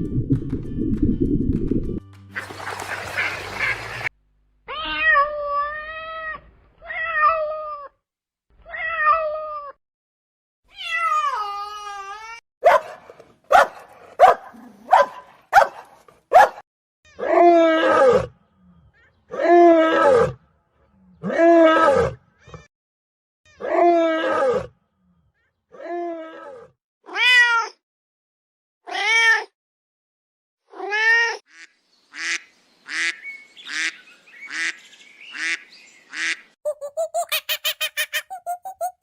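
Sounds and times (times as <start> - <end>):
cat meowing: 4.7 - 7.9, 8.6 - 9.8.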